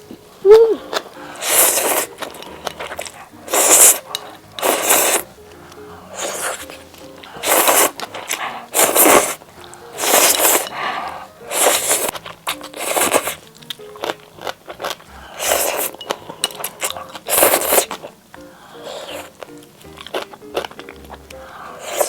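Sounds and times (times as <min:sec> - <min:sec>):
faint background music: 0:00.0 - 0:22.0
scraping strokes of food preparation: 0:00.8 - 0:22.0.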